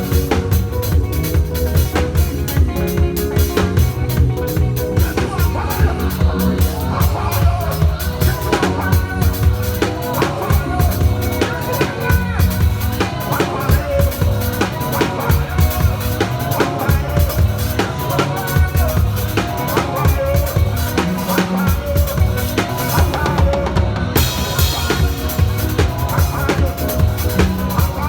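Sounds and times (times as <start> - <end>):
drum kit beat: 0.0 - 28.0
heavy bass line: 0.0 - 28.0
live gospel band playing: 0.0 - 28.0.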